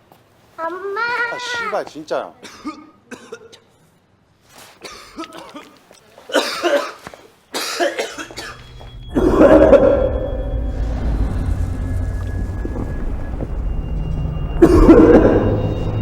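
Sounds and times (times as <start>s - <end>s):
person coughing: 2.4s - 3.7s, 4.8s - 8.6s, 9.2s - 10.0s, 14.6s - 15.5s
low rumble: 8.5s - 16.0s.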